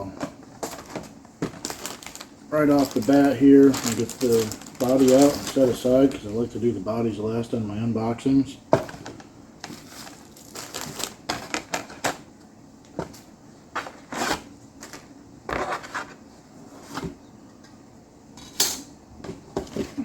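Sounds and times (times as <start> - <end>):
packaging rustling: 0.4 - 6.5, 8.8 - 12.3.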